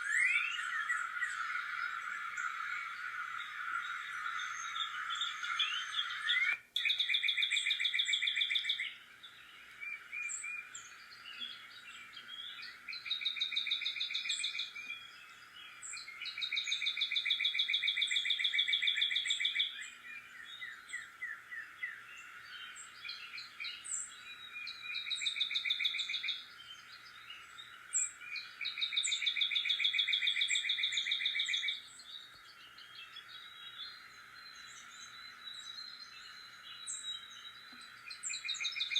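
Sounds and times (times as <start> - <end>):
bird trilling: 0.0 - 8.9
background hiss: 0.0 - 38.9.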